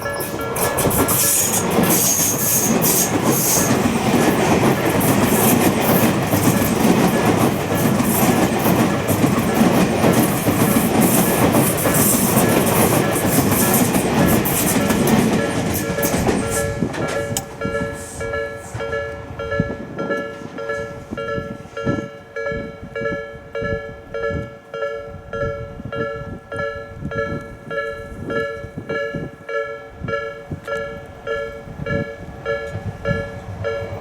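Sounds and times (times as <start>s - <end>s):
high wheel squeals: 0.0s - 3.8s
train wheels clattering over rails: 0.0s - 22.2s
level crossing warning bell: 0.0s - 34.0s.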